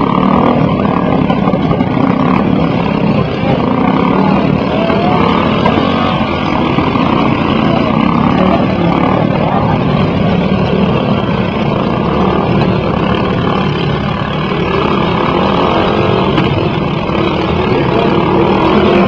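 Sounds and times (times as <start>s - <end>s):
riding lawn mower engines running: 0.0s - 19.0s.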